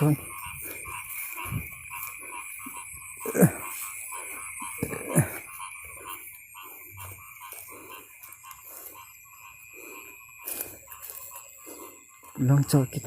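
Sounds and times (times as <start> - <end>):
frogs croaking: 0.0 - 13.0
high-pitched insect trill: 0.0 - 13.0.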